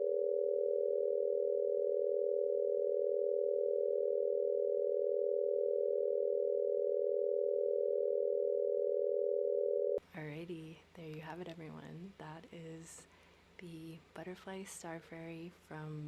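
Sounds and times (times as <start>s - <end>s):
steady sine tone chord: 0.0s - 10.0s.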